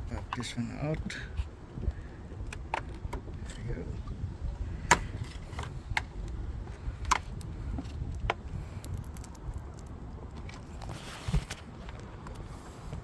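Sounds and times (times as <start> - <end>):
steady low rumble: 0.0 - 13.0
plastic trim clicking and knocking: 4.8 - 6.1.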